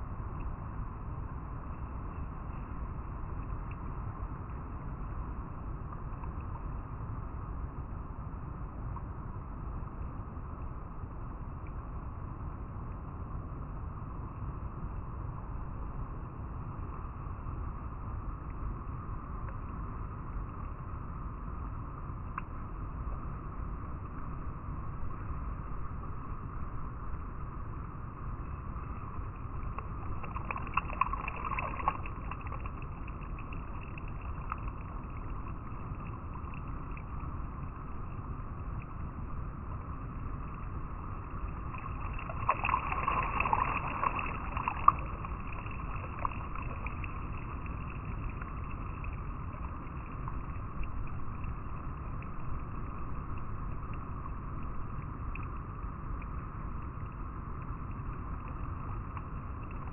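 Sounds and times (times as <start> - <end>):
river flowing over rocks: 29.6 - 52.5.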